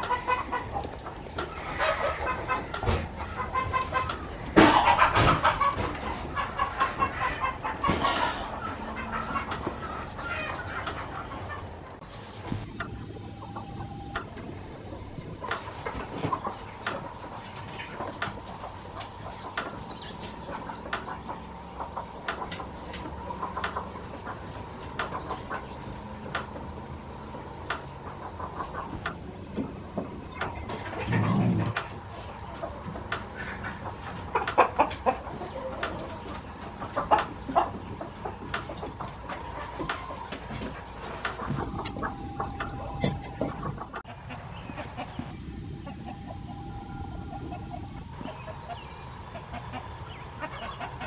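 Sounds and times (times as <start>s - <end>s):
chickens clucking: 0.0s - 51.0s
faint steady hum: 0.0s - 51.0s.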